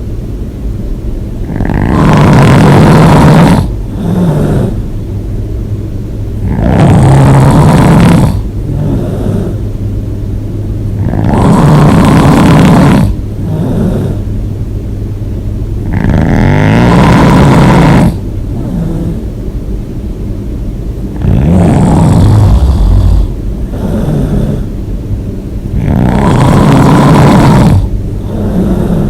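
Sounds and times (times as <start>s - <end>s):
person snoring loudly: 1.4s - 4.9s, 6.4s - 9.6s, 11.0s - 14.3s, 15.8s - 19.2s, 21.1s - 24.7s, 25.7s - 29.0s.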